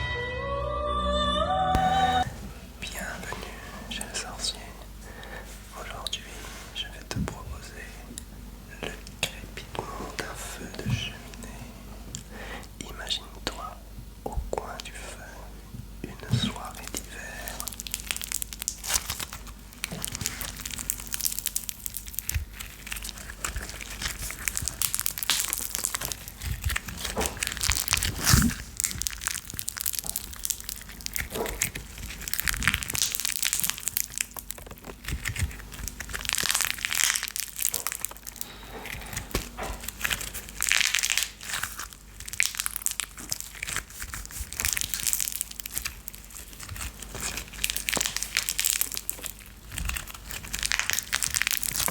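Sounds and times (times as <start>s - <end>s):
fireplace fire crackling: 16.5s - 51.9s.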